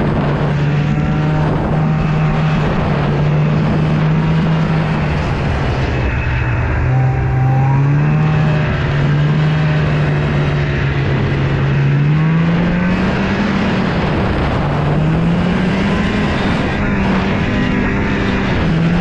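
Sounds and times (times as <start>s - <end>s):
snowmobile engine running: 0.0s - 19.0s.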